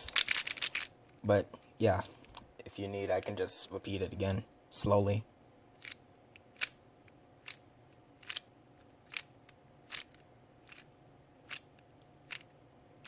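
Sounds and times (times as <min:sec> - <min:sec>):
plastic puzzle cube clicks: 0:08.2 - 0:12.5.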